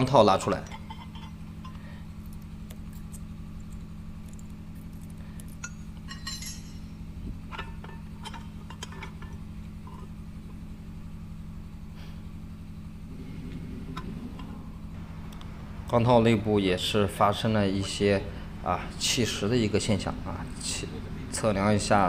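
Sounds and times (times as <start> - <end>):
steady low hum: 0.0 - 22.0
metallic clinks and taps: 5.5 - 6.9.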